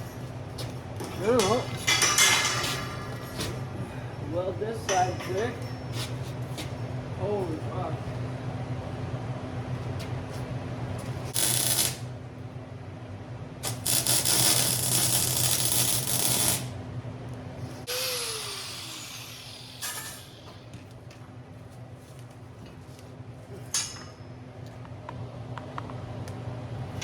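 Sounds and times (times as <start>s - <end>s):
electrical hum: 0.0s - 27.0s
power tool spinning down: 17.9s - 20.4s.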